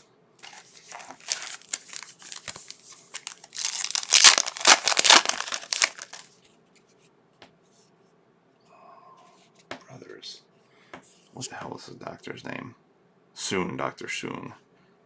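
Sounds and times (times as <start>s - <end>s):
foil wrapper crinkling and tearing: 0.4s - 6.3s.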